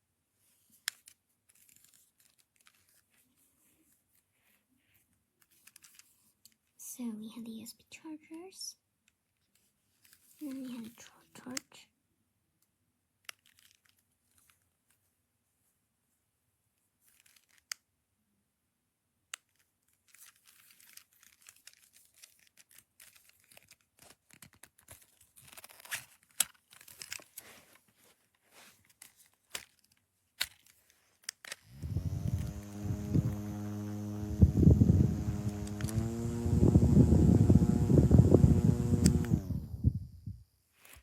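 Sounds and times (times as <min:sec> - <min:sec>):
plastic packaging crinkling and tearing: 0:00.9 - 0:03.4, 0:13.3 - 0:14.6, 0:19.5 - 0:31.8
clicks: 0:30.4 - 0:39.7
loud steady hum: 0:31.7 - 0:39.9.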